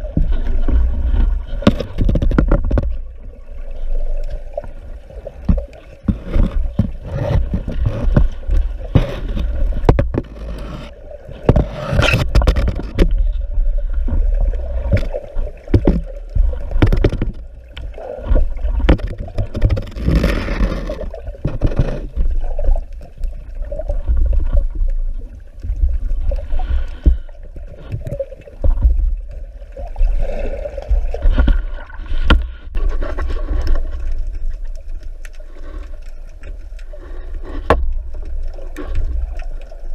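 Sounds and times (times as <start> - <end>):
water sloshing and gurgling: 0.0 - 39.9
knocks clicks and scrapes: 0.1 - 3.1, 5.4 - 13.4, 14.8 - 22.8, 30.9 - 39.7.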